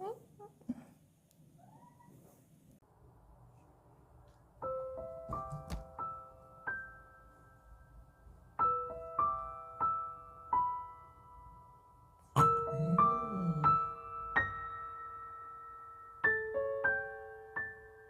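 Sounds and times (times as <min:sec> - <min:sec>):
gentle piano melody: 0:04.6 - 0:18.0.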